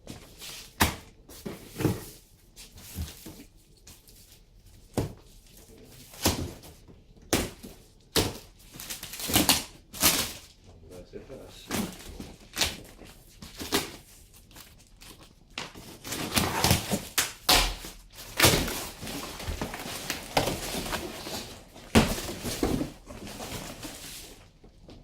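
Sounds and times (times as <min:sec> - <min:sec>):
rustling noise: 0:17.9 - 0:24.9.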